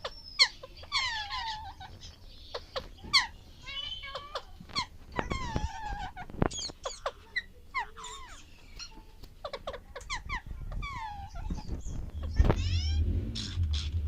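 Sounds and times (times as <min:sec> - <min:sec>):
parakeet chirps and squawks: 0:00.0 - 0:14.0.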